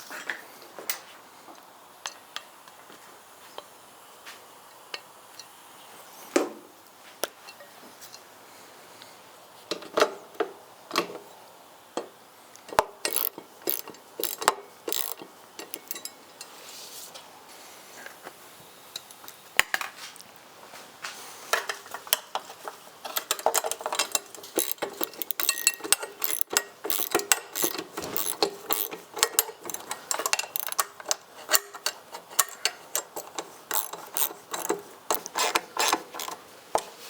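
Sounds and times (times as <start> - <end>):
metal hardware clicking and rattling: 12.7 - 16.5, 21.6 - 36.9.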